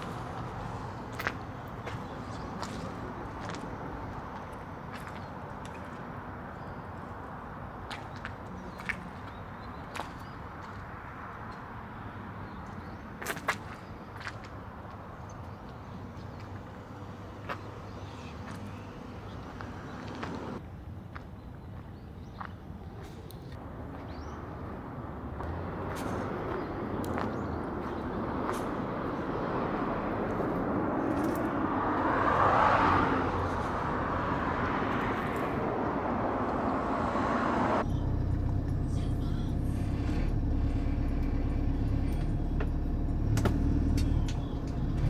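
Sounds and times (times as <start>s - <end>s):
motor vehicle rushing: 25.4s - 45.0s
steady low rumble: 33.4s - 45.0s.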